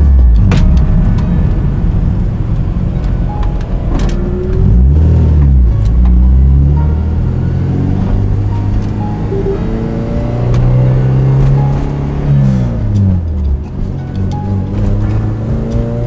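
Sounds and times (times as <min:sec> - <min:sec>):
car engine running loud: 0:00.0 - 0:16.0.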